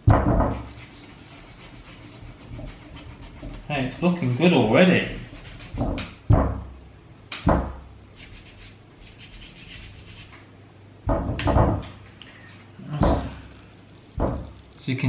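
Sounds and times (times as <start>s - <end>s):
brush scrubbing suede: 0.5s - 6.2s, 8.2s - 10.4s.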